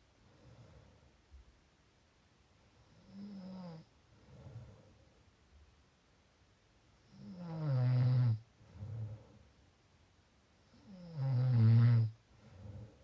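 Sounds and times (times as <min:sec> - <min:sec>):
soft breath: 0:00.0 - 0:01.5, 0:03.8 - 0:05.4, 0:08.5 - 0:09.7, 0:12.2 - 0:13.0
person snoring: 0:07.1 - 0:09.4, 0:10.8 - 0:13.0.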